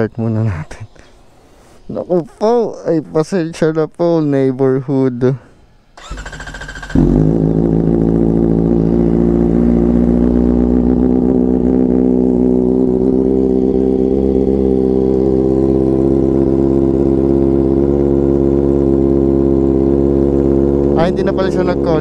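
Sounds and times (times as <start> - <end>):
motorcycle engine idling: 6.0 - 22.0.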